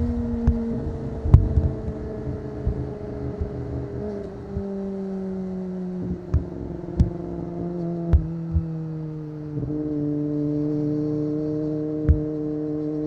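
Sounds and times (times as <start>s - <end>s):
motorcycle engine: 0.0s - 13.0s
short thumps: 6.0s - 11.1s, 12.0s - 12.4s.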